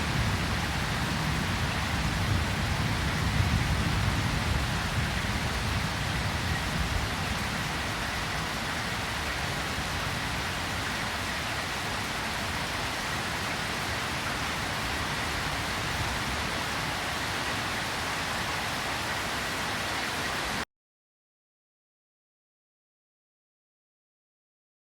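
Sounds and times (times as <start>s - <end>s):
low thunder rumble: 0.0s - 8.2s
steady rain: 0.0s - 20.6s.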